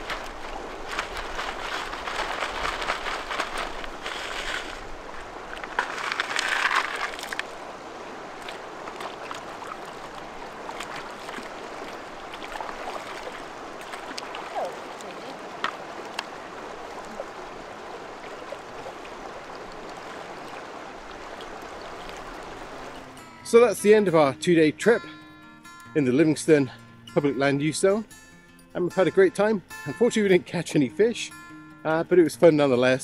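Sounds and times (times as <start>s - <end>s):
rustling and knocks: 0.0s - 7.5s
river flowing: 0.0s - 27.5s.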